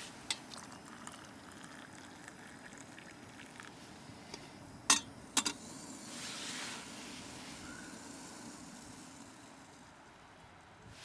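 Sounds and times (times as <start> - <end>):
water pouring into a cup: 0.3 - 4.8.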